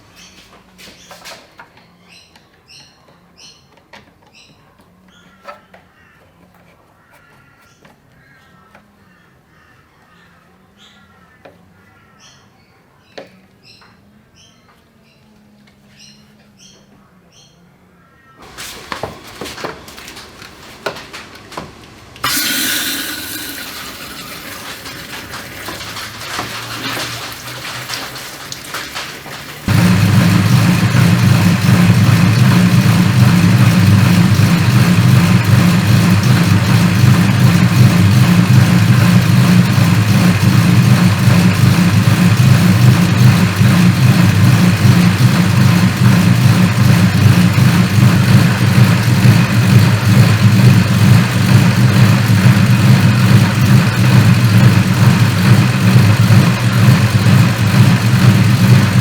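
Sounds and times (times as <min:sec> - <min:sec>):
car engine idling: 0:18.4 - 0:59.0.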